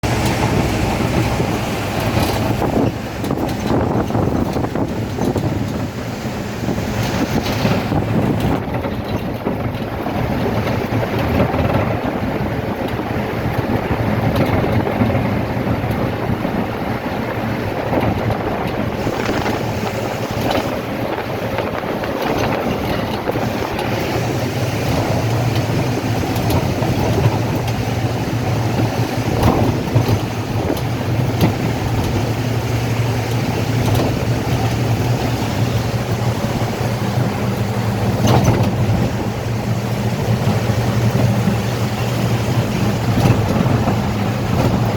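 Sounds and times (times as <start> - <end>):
river water rushing: 0.0 - 8.5, 17.6 - 44.9
wind buffeting microphone: 0.0 - 44.9.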